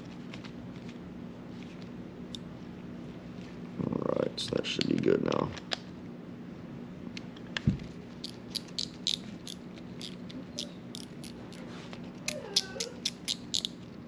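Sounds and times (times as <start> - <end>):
fishing reel clicking: 13.0 - 13.7.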